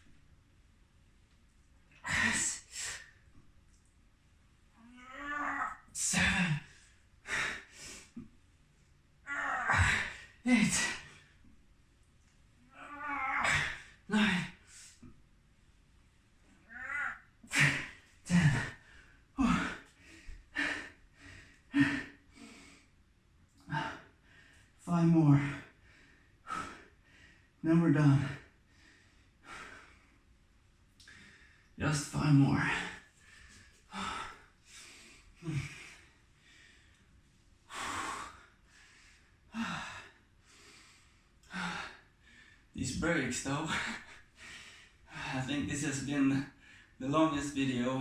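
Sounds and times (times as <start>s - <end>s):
man grunting: 2.0s - 3.0s, 4.8s - 6.7s, 9.3s - 11.1s, 12.8s - 14.6s, 16.7s - 18.8s, 19.4s - 19.9s
man speaking: 2.0s - 3.0s, 6.0s - 6.7s, 9.8s - 11.1s, 17.5s - 18.8s, 24.8s - 25.6s, 27.6s - 28.4s, 31.8s - 33.0s, 42.8s - 44.0s, 45.2s - 48.0s
man breathing hard: 2.0s - 3.2s, 6.1s - 8.3s, 17.5s - 23.0s, 25.5s - 27.6s, 28.4s - 30.3s, 31.0s - 31.8s, 32.7s - 37.1s, 37.7s - 42.7s, 43.7s - 45.4s.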